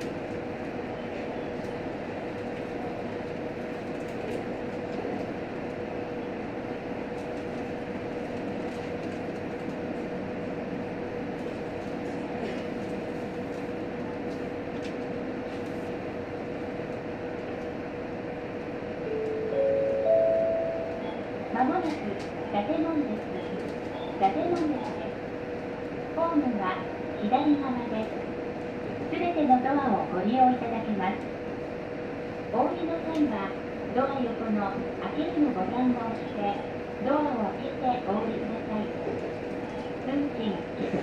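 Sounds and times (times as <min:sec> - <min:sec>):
wheels rumbling on rail: 0:00.0 - 0:26.8.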